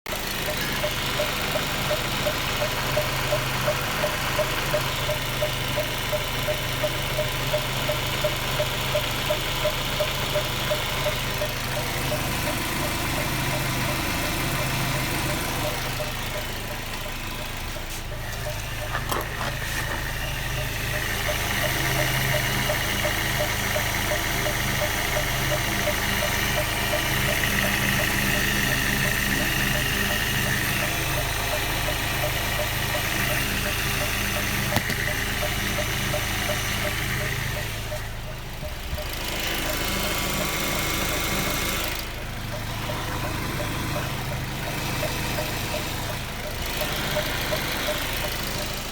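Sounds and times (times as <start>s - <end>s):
car engine idling: 0.1s - 48.9s
belt drive knocking: 32.6s - 37.0s.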